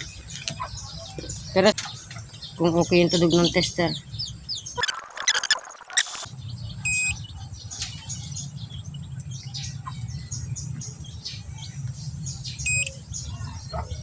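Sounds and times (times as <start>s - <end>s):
birds chirping: 0.0s - 14.0s
multimeter beep: 4.8s - 7.2s, 12.7s - 12.9s.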